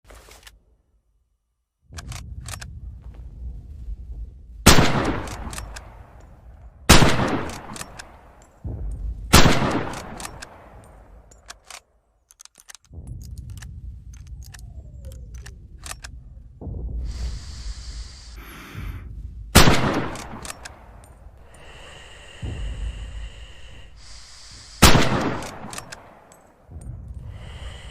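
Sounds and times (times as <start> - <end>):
steady low rumble: 1.0 - 27.9
rifle shots with echo: 4.7 - 6.2, 6.9 - 8.4, 9.3 - 11.2, 19.6 - 20.9, 24.8 - 26.3
sharp rifle bolt clicks: 5.0 - 6.3, 6.9 - 8.6, 9.4 - 16.2, 19.6 - 21.2, 24.8 - 26.5.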